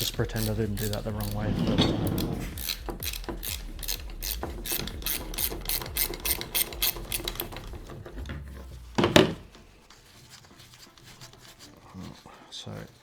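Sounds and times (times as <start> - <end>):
metal clunk: 0.0 - 9.6
socket ratchet clicking: 0.0 - 9.6.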